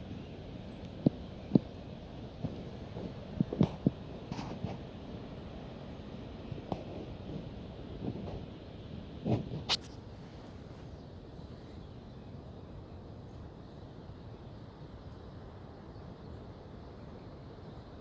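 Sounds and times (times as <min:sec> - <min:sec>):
wind buffeting microphone: 0:00.0 - 0:09.8.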